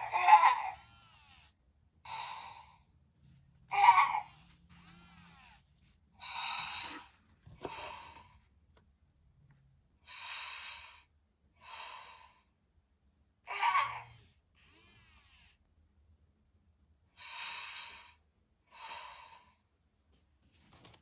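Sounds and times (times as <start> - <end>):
toy snoring through a speaker: 0.0 - 2.8, 3.7 - 7.1, 13.5 - 15.7.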